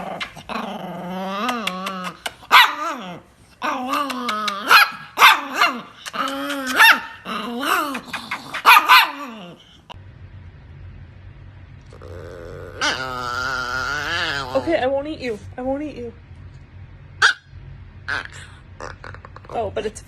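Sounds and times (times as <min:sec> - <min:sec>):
dog growl-barking and yowling: 0:00.0 - 0:09.9, 0:11.9 - 0:14.8, 0:18.0 - 0:19.6.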